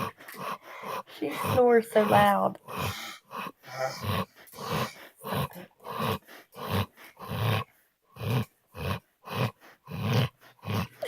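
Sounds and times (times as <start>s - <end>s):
dog snoring: 0.0s - 11.0s.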